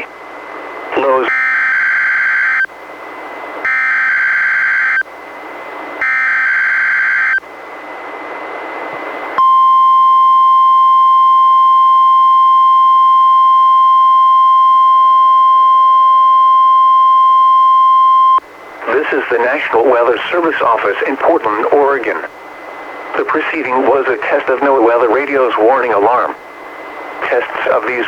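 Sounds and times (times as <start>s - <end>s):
receiver hiss: 0.0s - 3.6s, 6.7s - 28.0s
steady warning alarm tone: 1.0s - 2.8s, 3.6s - 5.1s, 6.0s - 7.5s, 9.4s - 22.0s.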